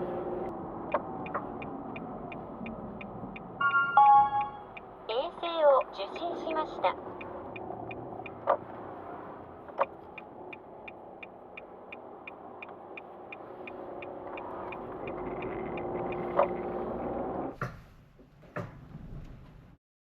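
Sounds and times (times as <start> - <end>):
car running sound from cabin: 0.0 - 17.9
even ticking: 0.9 - 3.7, 4.4 - 8.7, 9.6 - 16.6.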